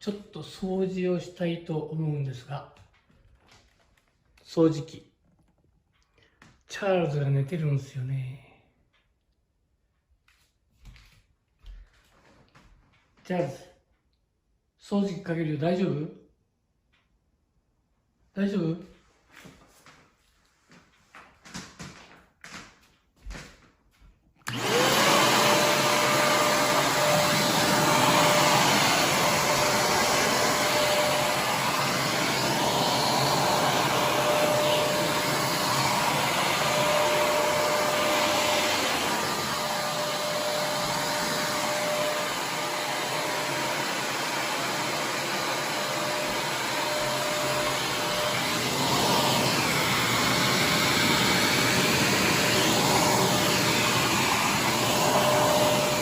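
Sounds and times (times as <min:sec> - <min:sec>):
vacuum cleaner motor whining: 0:24.4 - 0:56.0.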